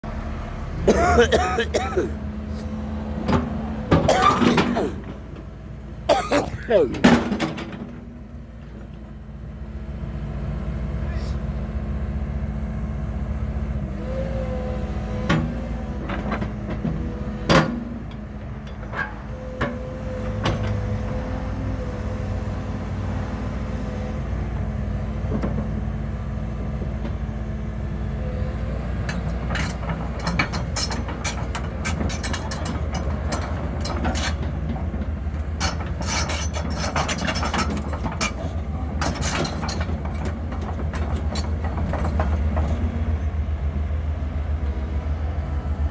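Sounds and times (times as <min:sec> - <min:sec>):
excavator diesel hum and whine: 0:00.0 - 0:45.9
metallic clanking and squeaking: 0:00.9 - 0:09.1, 0:15.1 - 0:22.2, 0:28.1 - 0:43.3.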